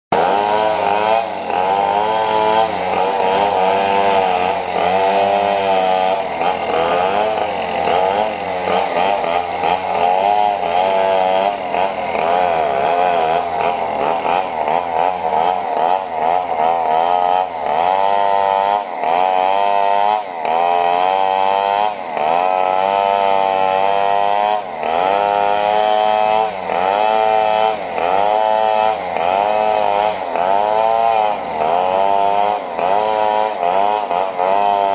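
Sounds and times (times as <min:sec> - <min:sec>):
small petrol engine revving: 0:00.1 - 0:34.9.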